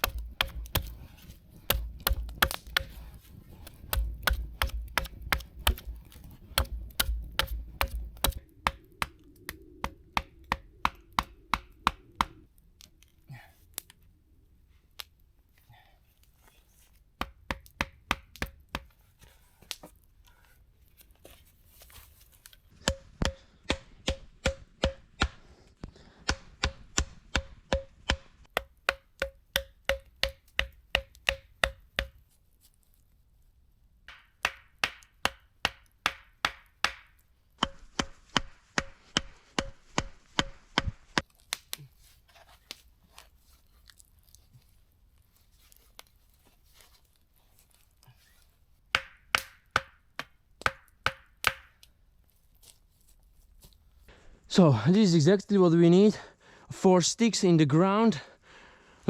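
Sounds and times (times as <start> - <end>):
wood chopping strikes: 0.0 - 12.4, 22.8 - 32.2, 34.1 - 41.7, 48.9 - 51.9.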